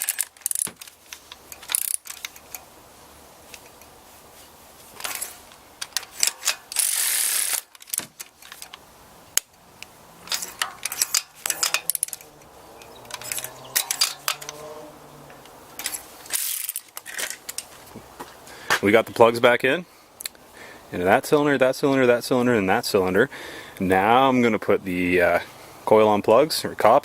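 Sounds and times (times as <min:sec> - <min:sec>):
socket ratchet clicking: 0:00.0 - 0:02.6
hand tools clicking and clanking: 0:00.0 - 0:02.7, 0:04.8 - 0:19.2.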